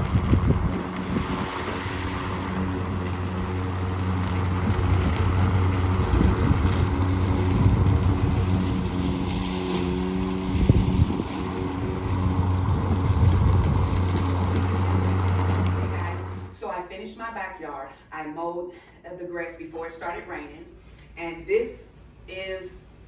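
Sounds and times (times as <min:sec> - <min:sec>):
electric lawn mower running: 0:00.0 - 0:16.6.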